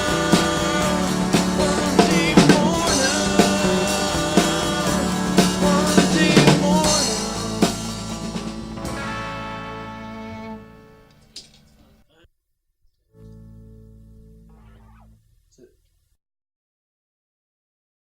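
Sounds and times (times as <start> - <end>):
person singing: 0.0 - 8.3
drum kit: 0.0 - 11.9
rock band playing: 0.0 - 11.9.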